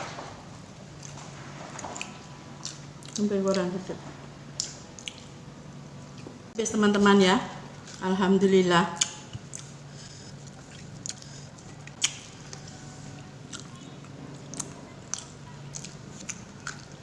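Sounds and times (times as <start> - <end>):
steady low hum: 0.0 - 17.0
person chewing food: 1.0 - 3.6, 4.6 - 5.4, 9.0 - 17.0
mouth clicks and smacks: 4.6 - 5.4.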